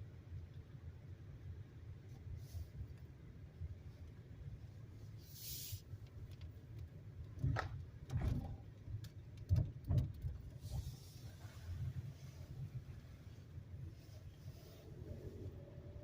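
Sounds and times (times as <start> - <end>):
car driving rumble: 0.0 - 16.0
short hiss: 5.2 - 5.9
knocks and bumps: 7.4 - 8.6, 9.4 - 10.5.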